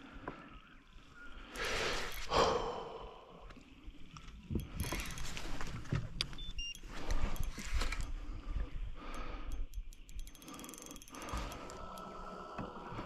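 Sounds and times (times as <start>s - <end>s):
fishing reel clicking: 4.0s - 12.6s.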